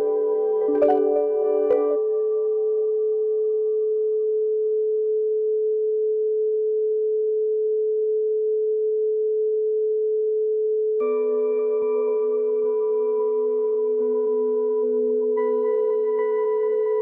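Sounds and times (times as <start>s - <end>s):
steady pure tone: 0.0s - 4.3s
low note: 0.6s - 2.1s.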